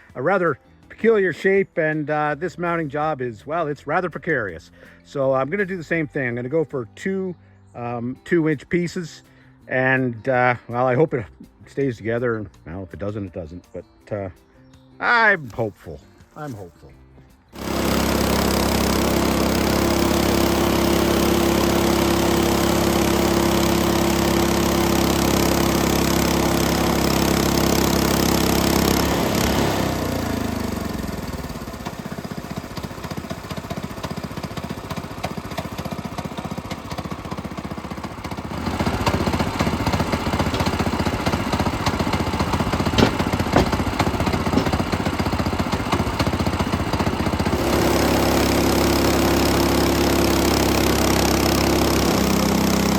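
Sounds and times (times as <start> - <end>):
small engine running: 17.5 - 52.9
sharp knocks: 42.9 - 45.0.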